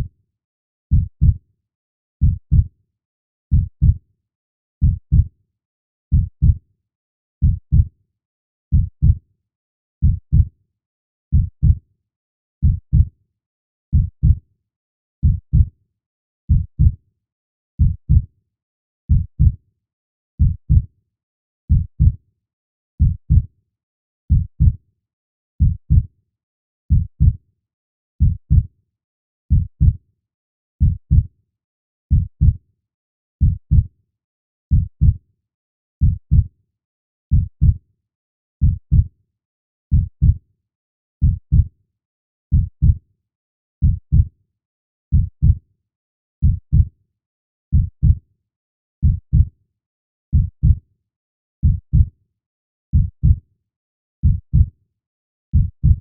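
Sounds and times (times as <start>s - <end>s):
heartbeat thumps: 36.0s - 36.4s, 46.4s - 46.9s, 49.0s - 49.4s, 51.6s - 52.1s, 54.2s - 54.6s, 55.5s - 56.0s.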